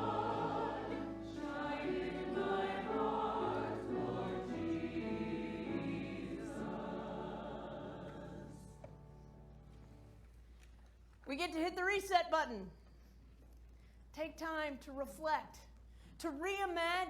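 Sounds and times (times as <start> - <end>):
church choir singing: 0.0 - 9.3.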